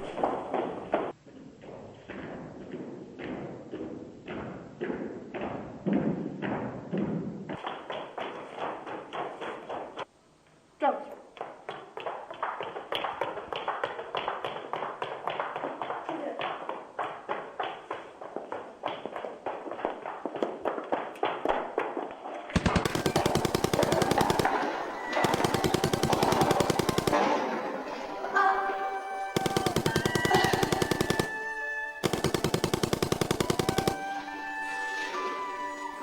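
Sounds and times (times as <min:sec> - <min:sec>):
quick even tapping: 0:22.6 - 0:24.6, 0:25.2 - 0:27.3, 0:29.4 - 0:34.1
machine-gun fire bursts: 0:22.6 - 0:27.9, 0:29.2 - 0:34.5.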